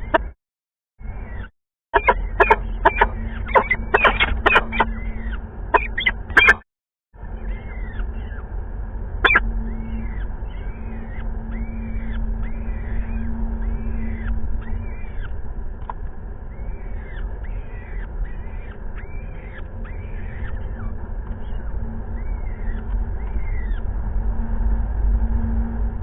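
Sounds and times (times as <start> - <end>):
thin high chick calls: 1.0 - 6.6, 9.2 - 23.9
falcons harsh repeated calls: 2.0 - 6.6, 9.2 - 15.4.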